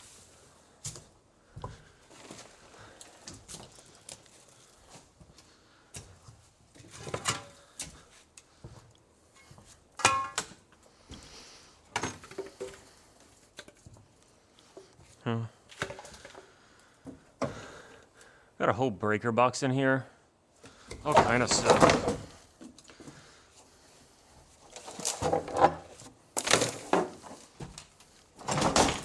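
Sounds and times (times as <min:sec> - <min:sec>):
metallic clang: 0:10.0 - 0:10.6
junk knocking and clattering: 0:21.0 - 0:22.4, 0:28.4 - 0:29.0.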